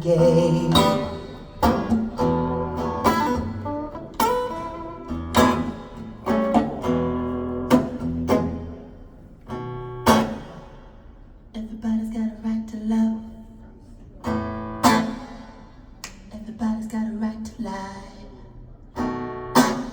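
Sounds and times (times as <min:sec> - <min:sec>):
guitar music over loudspeakers: 0:00.0 - 0:10.9, 0:14.2 - 0:15.4, 0:19.0 - 0:19.9.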